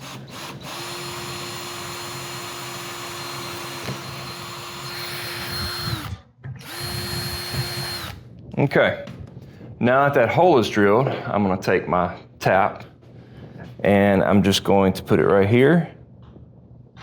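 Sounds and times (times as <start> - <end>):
electric drill whining: 0.0 - 8.2.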